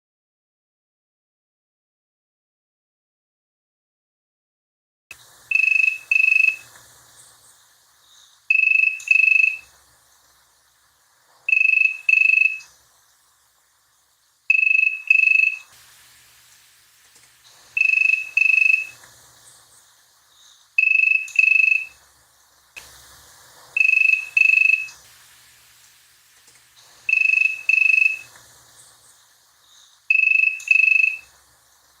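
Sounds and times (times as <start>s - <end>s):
telephone ringing: 5.5s - 6.7s, 8.5s - 9.7s, 11.5s - 12.6s, 14.5s - 15.7s, 17.8s - 19.0s, 20.8s - 22.0s, 23.8s - 25.0s, 27.1s - 28.3s, 30.1s - 31.3s.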